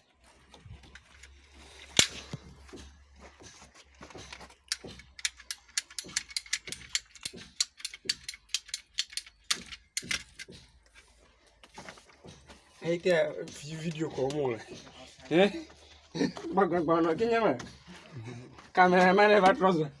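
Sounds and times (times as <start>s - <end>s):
sharp mechanical clicks: 4.6s - 10.6s.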